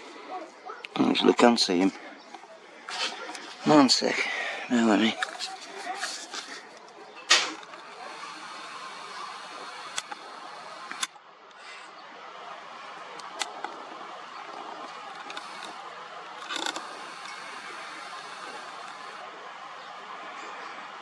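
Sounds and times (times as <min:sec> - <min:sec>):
short rustle: 0:02.4 - 0:03.9, 0:05.0 - 0:11.1
steady hiss: 0:02.8 - 0:21.0
camera handling clicks: 0:07.3 - 0:11.2, 0:13.2 - 0:13.7.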